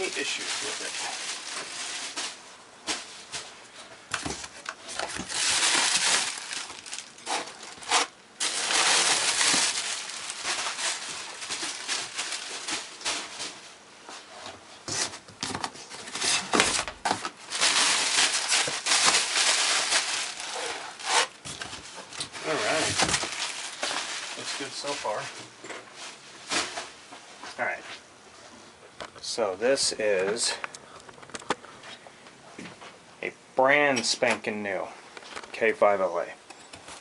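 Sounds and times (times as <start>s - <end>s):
packing material rustling: 0.0s - 13.8s, 14.9s - 26.9s.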